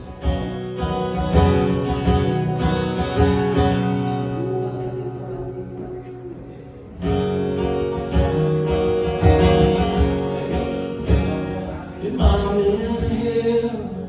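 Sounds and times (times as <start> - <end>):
strummed acoustic guitar: 0.0 - 14.0.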